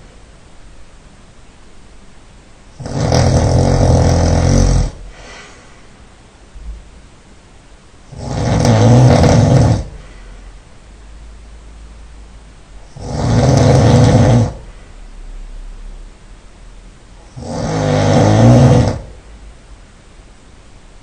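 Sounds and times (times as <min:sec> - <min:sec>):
man snoring loudly: 0:02.8 - 0:05.0, 0:08.1 - 0:10.0, 0:12.9 - 0:14.7, 0:17.3 - 0:19.2
faint breath: 0:05.0 - 0:06.1, 0:09.8 - 0:10.6.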